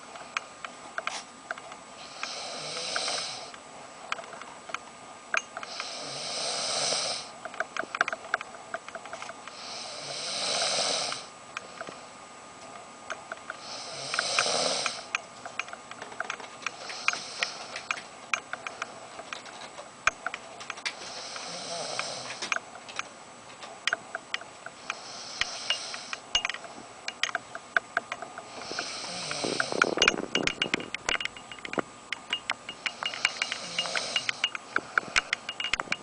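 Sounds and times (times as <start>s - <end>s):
breathy hissing snore: 2.0s - 3.6s, 5.6s - 7.4s, 9.5s - 11.8s, 13.5s - 15.1s, 16.7s - 18.0s, 20.9s - 22.6s, 24.8s - 26.2s, 28.5s - 30.1s, 32.8s - 35.2s
sharp clicks: 13.1s - 23.1s, 23.8s - 36.0s.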